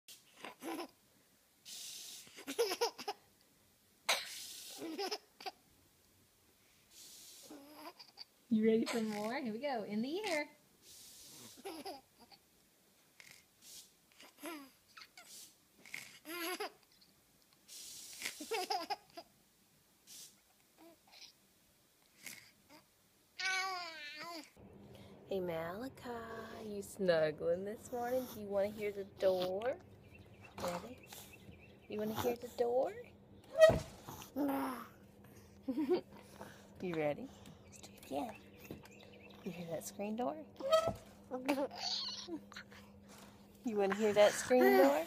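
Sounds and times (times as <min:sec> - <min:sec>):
baby laughing and squealing: 0:00.4 - 0:00.9, 0:02.3 - 0:03.2, 0:04.6 - 0:05.6, 0:11.6 - 0:12.4, 0:16.0 - 0:16.8, 0:18.2 - 0:19.2, 0:40.6 - 0:42.5
spray hissing: 0:01.7 - 0:02.4, 0:06.9 - 0:07.6, 0:10.8 - 0:11.6, 0:17.7 - 0:18.6, 0:20.0 - 0:20.4
infant babbling and giggling: 0:04.7 - 0:05.6, 0:07.5 - 0:08.3, 0:11.5 - 0:12.4, 0:15.9 - 0:16.8, 0:34.3 - 0:35.0, 0:40.6 - 0:42.8, 0:43.9 - 0:45.0.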